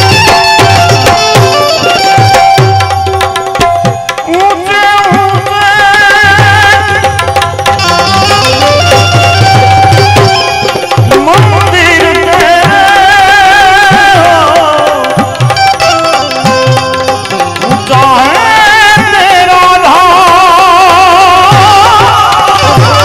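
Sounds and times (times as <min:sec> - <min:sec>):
melodic lead line: 0:00.0 - 0:04.6, 0:06.4 - 0:12.7.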